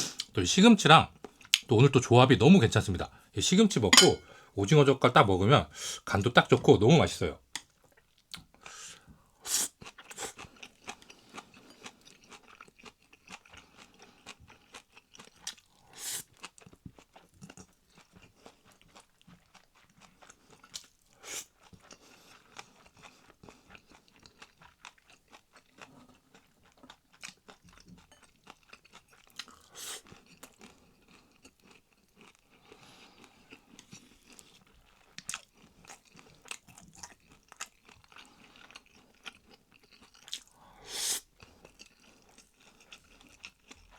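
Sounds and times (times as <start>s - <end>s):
wet chewing with crunching: 9.7s - 43.9s.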